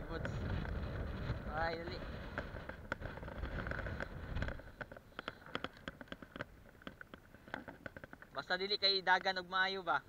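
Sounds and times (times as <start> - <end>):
wind rumbling on microphone: 0.0 - 8.2
light clicks and taps: 2.3 - 9.5.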